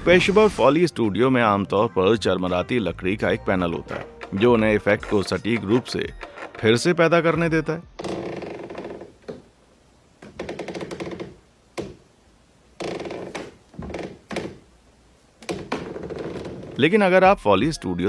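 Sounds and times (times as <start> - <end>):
wood creaking: 0.0 - 0.7, 8.0 - 16.9.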